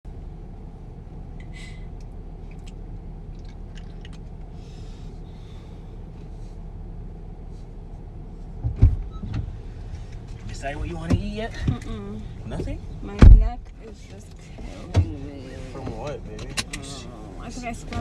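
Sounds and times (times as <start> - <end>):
loud thump: 13.2 - 13.6.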